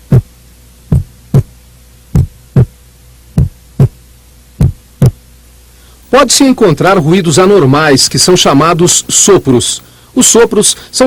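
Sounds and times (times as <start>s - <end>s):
heartbeat lub-dub: 0.0s - 5.3s
low hum: 0.0s - 11.0s.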